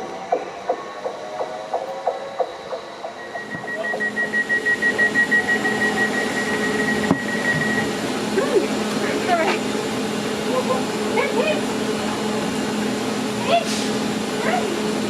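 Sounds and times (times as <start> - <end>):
train wheels clicking: 0.0 - 8.0
wheel squeal: 3.2 - 8.0.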